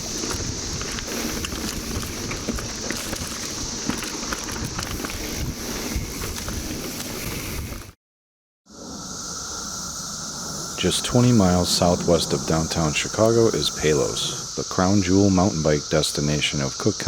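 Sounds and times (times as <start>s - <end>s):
clicks and rattles: 0.0s - 7.3s
cicadas droning: 0.0s - 7.9s, 8.7s - 17.0s
bike tyres rolling on dirt: 0.0s - 8.0s
wind on microphone: 0.0s - 8.0s.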